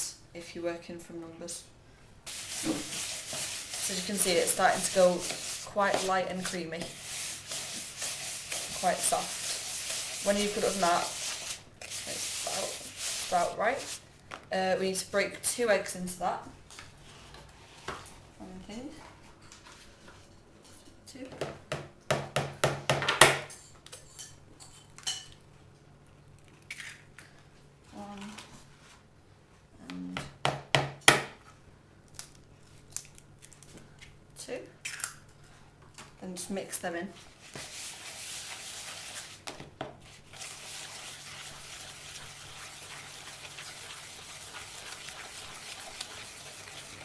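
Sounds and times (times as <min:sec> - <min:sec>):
wet stirring and scraping: 0:02.3 - 0:14.0, 0:37.1 - 0:47.0.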